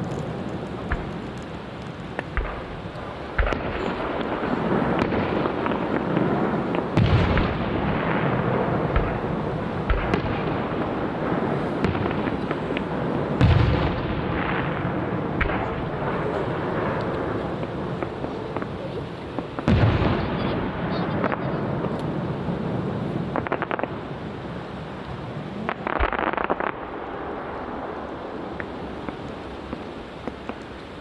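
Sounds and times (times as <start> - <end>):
firework booms: 0.0 - 31.0
fireworks crackling and popping: 0.0 - 31.0.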